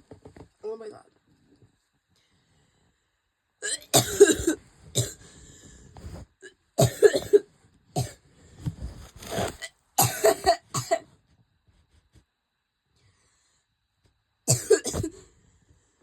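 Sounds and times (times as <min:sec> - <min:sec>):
person coughing harshly: 0:03.6 - 0:05.3, 0:06.8 - 0:08.2, 0:10.0 - 0:11.0, 0:14.5 - 0:15.2.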